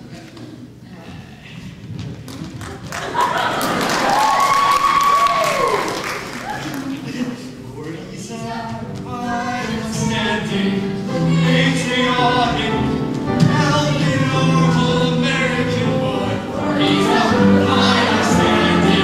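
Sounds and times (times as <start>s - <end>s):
chorus singing musical theatre: 7.1s - 19.0s.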